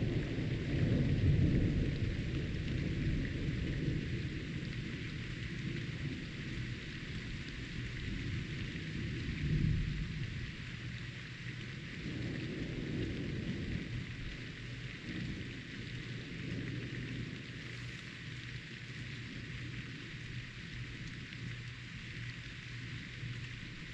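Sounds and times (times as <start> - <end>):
low rolling thunder: 0.0 - 6.2, 8.0 - 10.5, 12.0 - 18.2
steady rain falling: 0.0 - 23.9.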